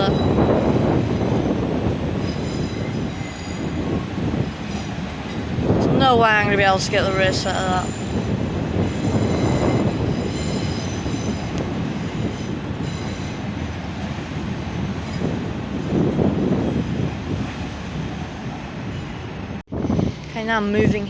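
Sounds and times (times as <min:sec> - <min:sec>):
train wheels rumbling on track: 0:00.0 - 0:21.0
high wheel squeal: 0:02.2 - 0:03.8, 0:07.7 - 0:13.5.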